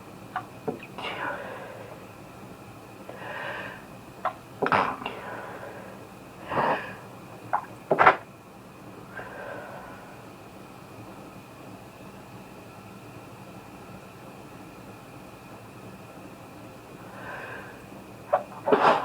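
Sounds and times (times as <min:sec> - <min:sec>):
faint breath: 0:03.1 - 0:03.9, 0:09.1 - 0:10.2, 0:17.0 - 0:17.9.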